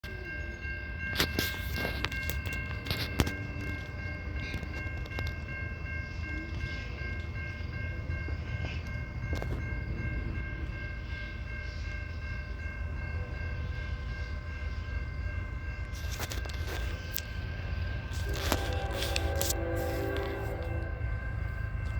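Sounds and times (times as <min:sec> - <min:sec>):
train rumbling: 0:00.0 - 0:21.9
locomotive air horn: 0:18.1 - 0:21.4.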